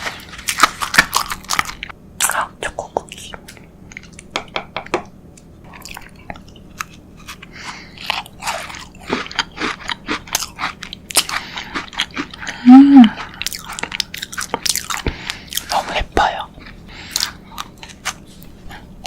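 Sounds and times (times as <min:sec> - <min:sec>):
crunching and chewing cookie: 0:00.0 - 0:04.3, 0:05.4 - 0:19.0
person humming: 0:12.5 - 0:13.3.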